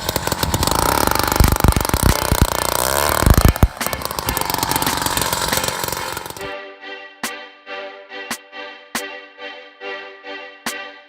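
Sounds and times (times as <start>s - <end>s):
small gas engine running: 0.0s - 6.5s.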